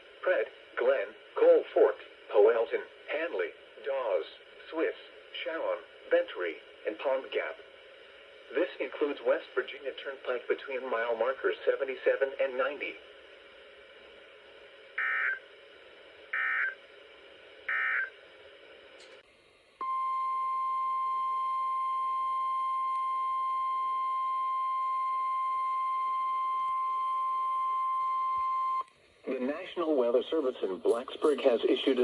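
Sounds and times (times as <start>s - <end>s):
steady alarm tone: 15.0s - 15.4s, 16.3s - 16.8s, 17.7s - 18.1s.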